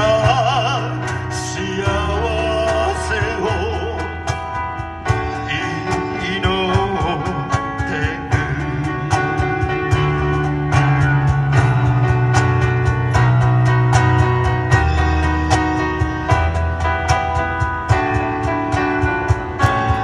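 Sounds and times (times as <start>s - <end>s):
person singing: 0.0s - 4.4s, 5.1s - 10.2s
guitar: 0.0s - 20.0s
sustained bass line: 0.0s - 20.0s.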